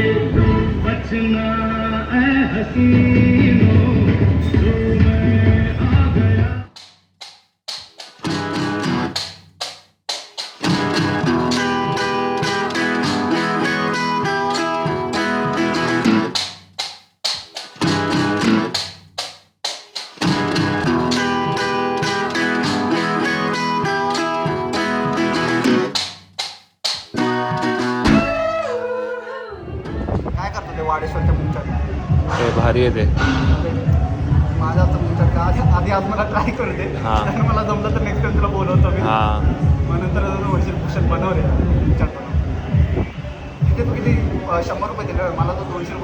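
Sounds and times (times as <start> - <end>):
plucked guitar music: 8.2 - 9.4, 10.3 - 16.6, 17.3 - 26.2, 26.9 - 28.7.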